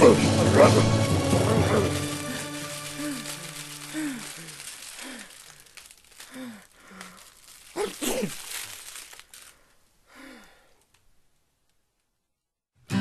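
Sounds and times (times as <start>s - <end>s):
crinkling and rustling: 0.8s - 12.3s
man's wordless vocal outbursts: 7.7s - 8.5s.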